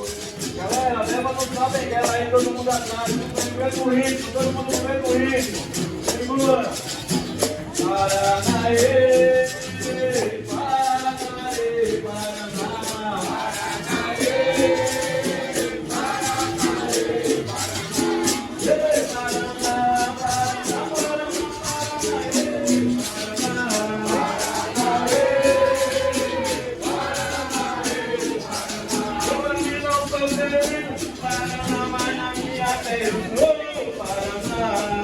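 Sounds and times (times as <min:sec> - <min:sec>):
caxixi rattles shaken: 0:00.0 - 0:35.0
group of voices singing: 0:00.0 - 0:35.0.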